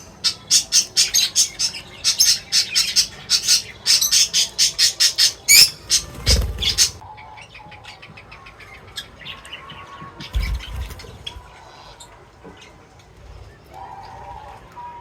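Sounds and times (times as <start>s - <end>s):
birds squawking: 0.0s - 7.9s
birds chirping: 0.0s - 15.0s.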